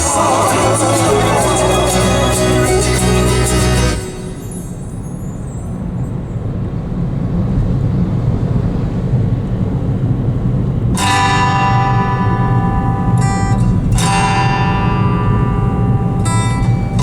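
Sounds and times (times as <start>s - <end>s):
bell-like chime: 0.0s - 6.1s.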